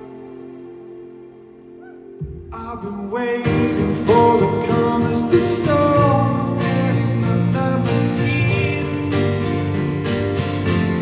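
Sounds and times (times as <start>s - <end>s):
person singing: 0.0s - 9.6s
strummed acoustic guitar: 2.5s - 11.0s.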